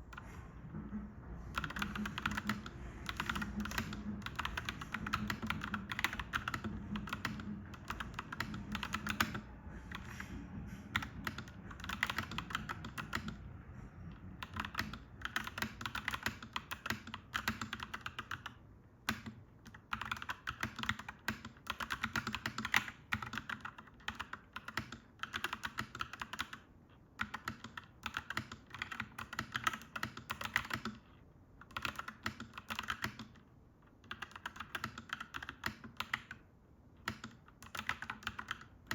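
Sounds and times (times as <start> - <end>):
mechanical keyboard typing: 1.5 - 13.4, 14.4 - 38.9.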